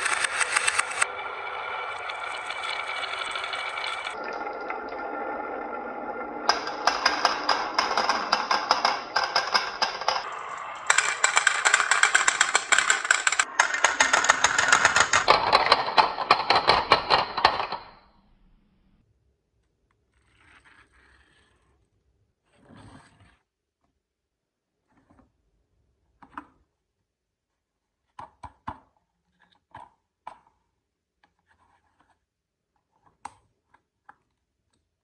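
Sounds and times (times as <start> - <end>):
marbles rolling down a track: 0.0 - 4.2, 6.0 - 18.0.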